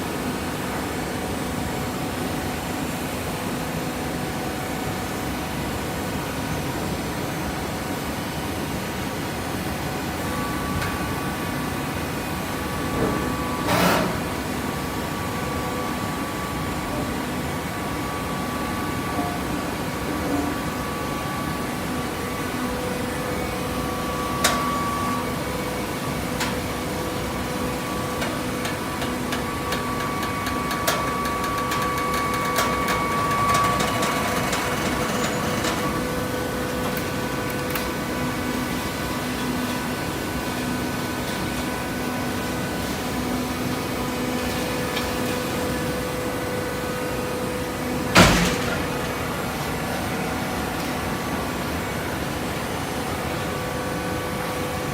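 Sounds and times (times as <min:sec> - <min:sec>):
baler power unit hum: 0:00.0 - 0:54.9
loud metal clank: 0:48.2 - 0:49.0.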